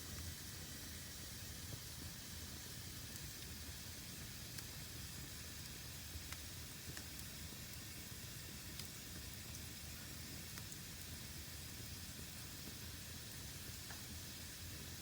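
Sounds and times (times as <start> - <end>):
fire hissing in fireplace: 0.0 - 15.0
fire crackling pops: 5.6 - 7.9.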